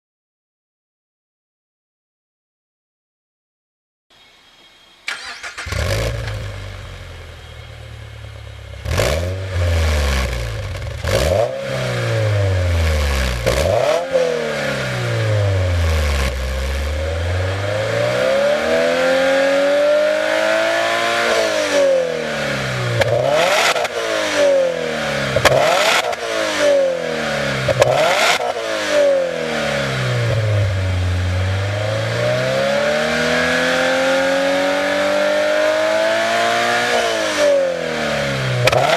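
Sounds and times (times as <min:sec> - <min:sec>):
car engine idling: 0:04.7 - 0:11.2
car engine revving: 0:05.1 - 0:38.9.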